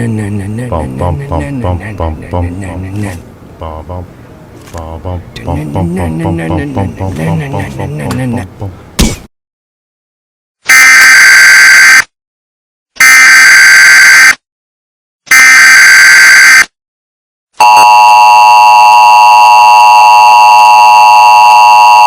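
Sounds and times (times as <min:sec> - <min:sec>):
two-tone attention signal: 0:17.6 - 0:22.0.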